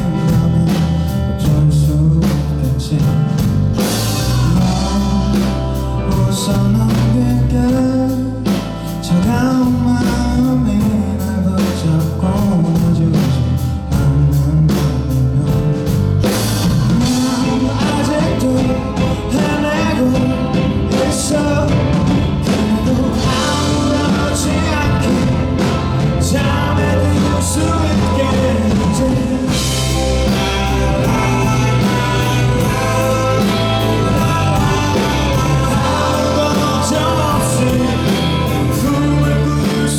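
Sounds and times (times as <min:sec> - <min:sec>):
man singing lead vocal: 0:00.0 - 0:39.9
rock band playing live: 0:00.0 - 0:39.9
drum hits: 0:15.7 - 0:39.9.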